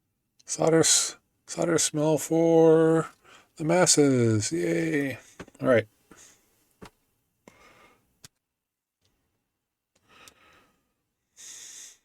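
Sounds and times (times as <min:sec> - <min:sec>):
faint breathing: 0:03.2 - 0:03.6, 0:05.2 - 0:06.6, 0:07.4 - 0:08.1, 0:10.0 - 0:12.0.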